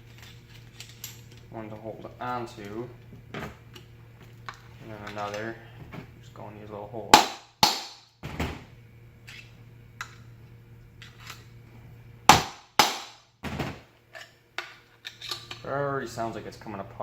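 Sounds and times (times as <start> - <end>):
metal whacks on screwdriver: 7.2 - 8.1, 12.3 - 13.2.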